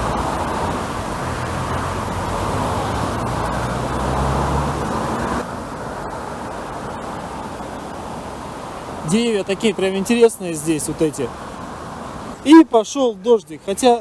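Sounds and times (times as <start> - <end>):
road noise: 0.0 - 14.0
vehicle engine hum: 0.0 - 14.0.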